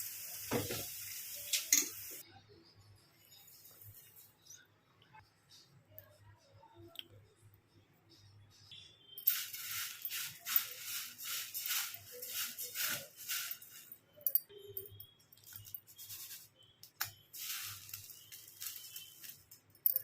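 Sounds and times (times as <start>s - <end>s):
rice sizzling in hot oil: 0.0s - 2.2s, 9.3s - 13.9s, 16.0s - 19.6s.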